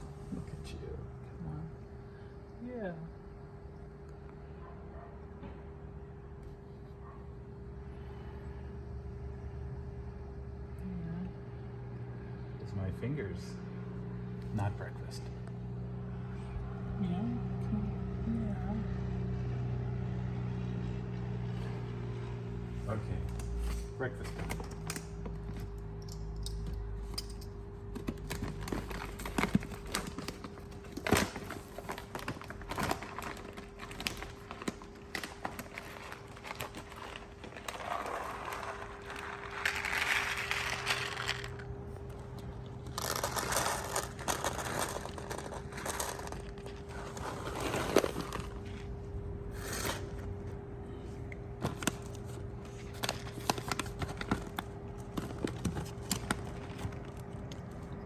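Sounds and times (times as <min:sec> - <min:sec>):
faint steady hum: 0:00.0 - 0:58.0
packaging crinkling and tearing: 0:28.0 - 0:48.9, 0:51.6 - 0:57.9.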